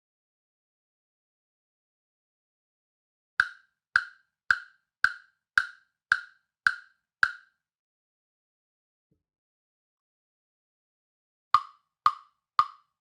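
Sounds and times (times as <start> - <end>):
plastic percussion block knocks: 3.4 - 7.5, 11.6 - 12.9.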